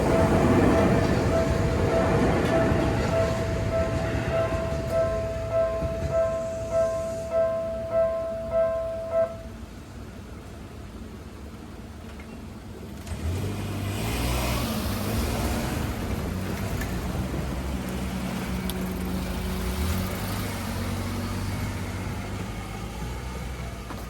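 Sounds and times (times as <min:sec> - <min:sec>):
vehicle passing by: 0:13.0 - 0:23.7.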